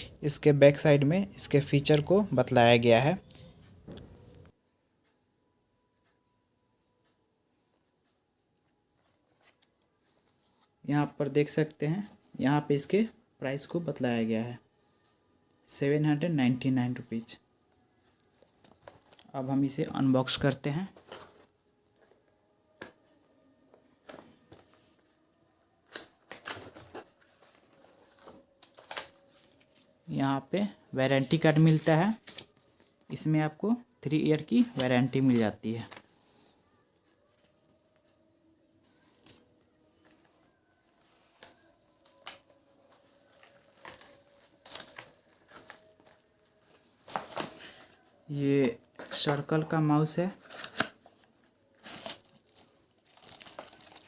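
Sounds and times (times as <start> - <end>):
packaging rustling: 40.8 - 48.0, 48.9 - 54.0.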